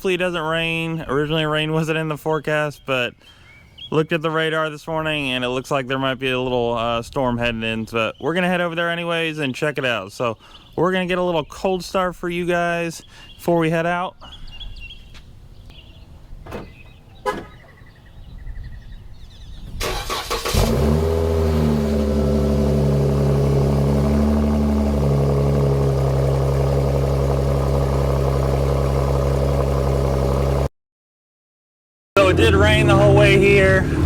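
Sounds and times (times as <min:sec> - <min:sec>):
car engine starting and idling: 0:19.8 - 0:30.7, 0:32.2 - 0:34.0.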